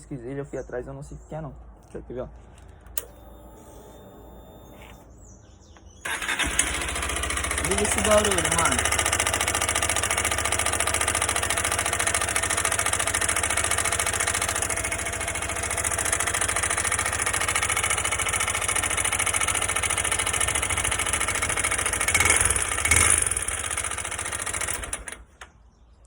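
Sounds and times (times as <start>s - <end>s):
abnormal mechanical noise: 1.6s - 25.6s
motorcycle engine idling: 6.0s - 25.4s.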